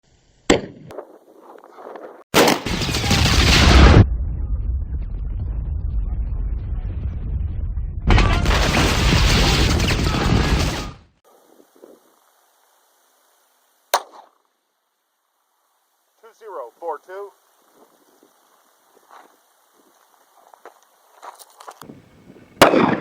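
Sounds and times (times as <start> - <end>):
dense gunfire and booms: 2.4 - 11.2, 22.6 - 23.0
quiet rumble: 3.5 - 8.5.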